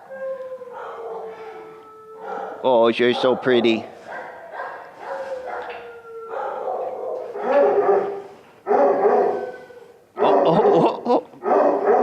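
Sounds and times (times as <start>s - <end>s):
dog barking: 0.8s - 1.6s, 2.2s - 9.5s, 10.2s - 10.8s, 11.4s - 12.0s.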